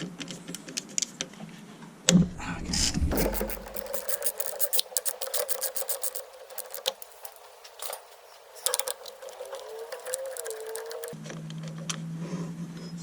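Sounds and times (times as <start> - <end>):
ratchet wrench clicking: 3.1 - 11.2.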